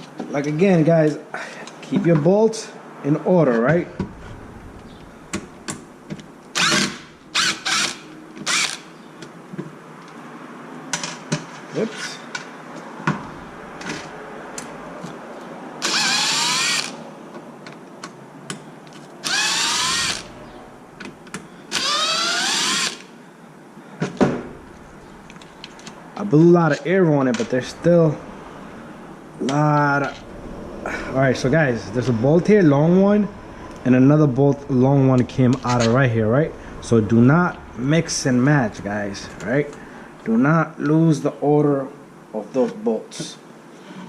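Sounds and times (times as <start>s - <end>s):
power driver whining: 4.0s - 9.0s, 15.8s - 17.0s, 19.2s - 23.1s.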